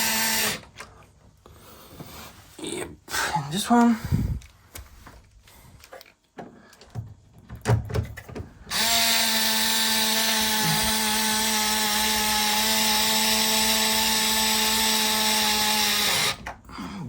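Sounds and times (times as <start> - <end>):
cordless drill running: 0.0 - 0.6, 8.7 - 16.4.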